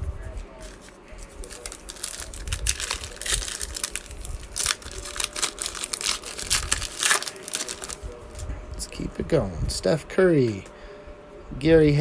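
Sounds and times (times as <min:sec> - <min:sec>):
plastic wrapper crinkling: 0:00.6 - 0:08.4.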